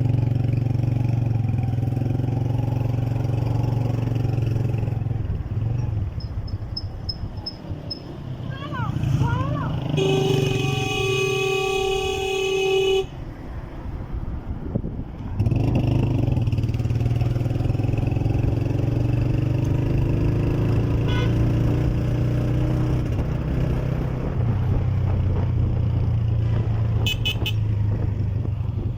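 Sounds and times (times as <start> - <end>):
vehicle engine droning: 0.0 - 28.9
vehicle horn long note: 9.9 - 13.2, 21.0 - 21.6, 27.0 - 27.7.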